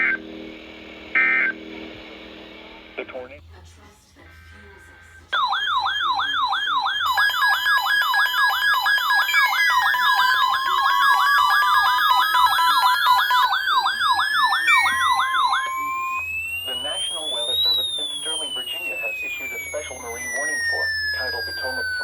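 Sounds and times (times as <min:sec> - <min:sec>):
electronic yelp siren: 0:00.0 - 0:00.2, 0:01.1 - 0:01.6, 0:05.3 - 0:22.0
high beeping tones: 0:05.4 - 0:22.0.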